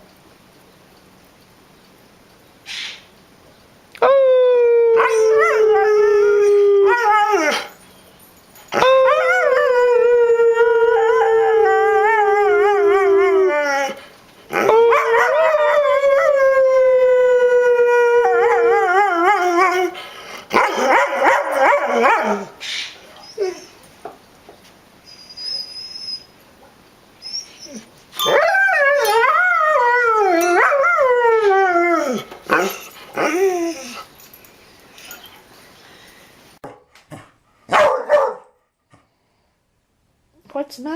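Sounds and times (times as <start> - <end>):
dogs howling: 4.0 - 7.8, 8.7 - 23.8, 27.2 - 34.1
dogs barking and yipping: 12.7 - 16.0, 18.4 - 24.0, 26.5 - 35.6, 37.7 - 38.5.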